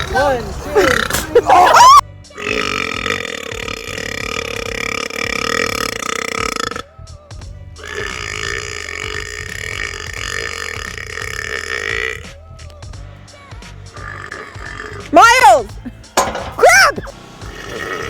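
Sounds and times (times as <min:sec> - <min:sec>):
person burping: 0:00.8 - 0:06.9, 0:07.8 - 0:12.2, 0:13.9 - 0:15.1, 0:17.5 - 0:18.0.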